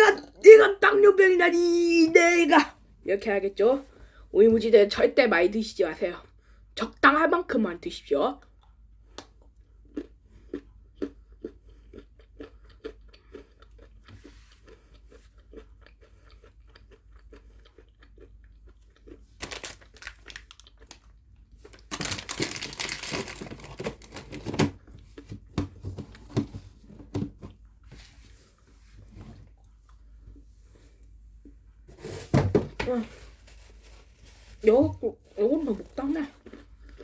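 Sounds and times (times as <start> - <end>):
person chewing with wet clicks: 8.4 - 21.9, 36.1 - 37.0
wrapper tearing: 19.4 - 21.1, 21.7 - 24.8.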